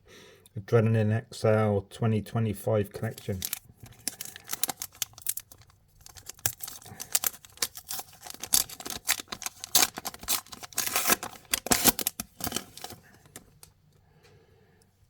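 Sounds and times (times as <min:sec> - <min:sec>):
wrapper tearing and crinkling: 0:03.2 - 0:13.6.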